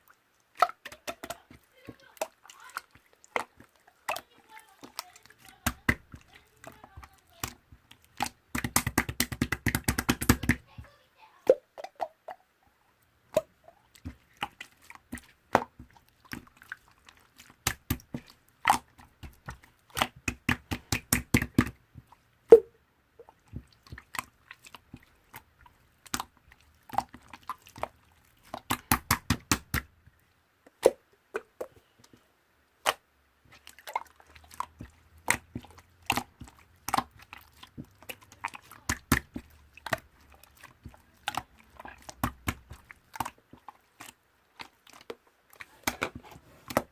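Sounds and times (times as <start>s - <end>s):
slime clicking and popping: 0.5s - 10.6s, 13.3s - 21.8s, 26.0s - 29.9s, 32.8s - 33.0s, 33.8s - 45.1s.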